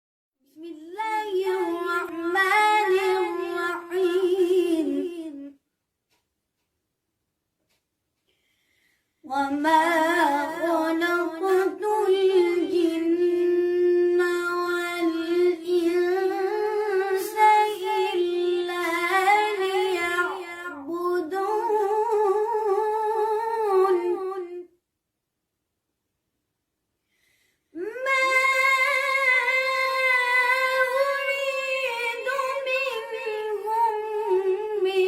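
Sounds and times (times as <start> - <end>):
person singing unaccompanied: 0.5 - 5.6, 9.3 - 24.8, 27.8 - 35.0.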